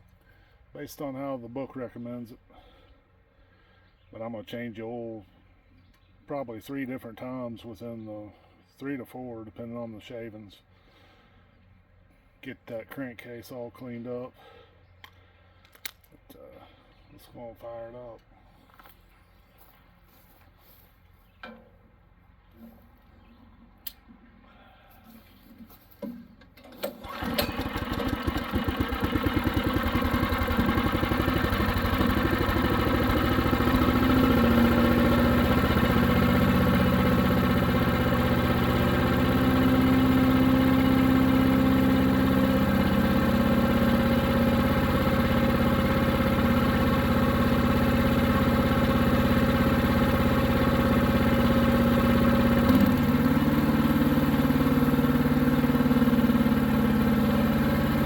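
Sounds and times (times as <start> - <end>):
small engine running: 26.6 - 58.0.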